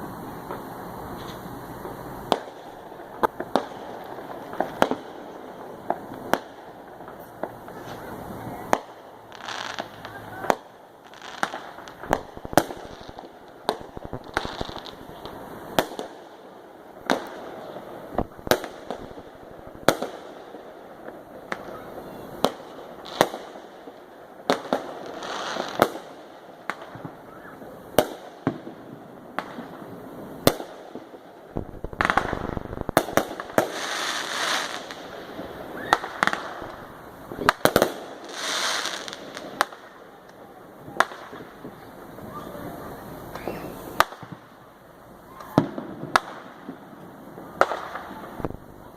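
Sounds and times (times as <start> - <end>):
fireworks banging: 0.0 - 44.6, 45.3 - 48.9
fireworks crackling hiss: 0.0 - 48.9.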